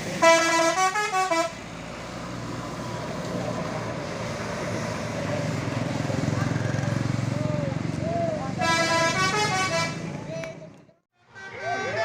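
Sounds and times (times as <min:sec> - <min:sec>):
bus engine rumble: 0:00.0 - 0:11.1.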